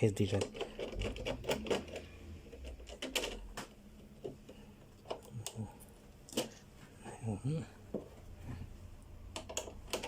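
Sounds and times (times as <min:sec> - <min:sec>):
tools clicking and tapping: 0:09.2 - 0:10.0.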